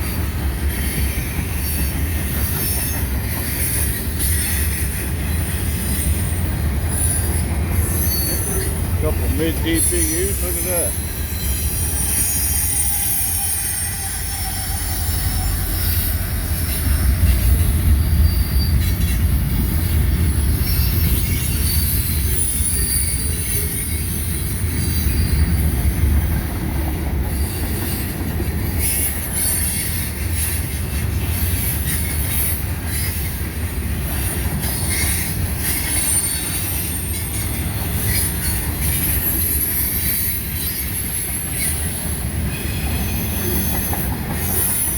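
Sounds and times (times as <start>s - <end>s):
train wheels rumbling on rail: 0.0s - 44.9s
high-pitched wheel squeal: 6.9s - 19.2s, 20.2s - 25.7s.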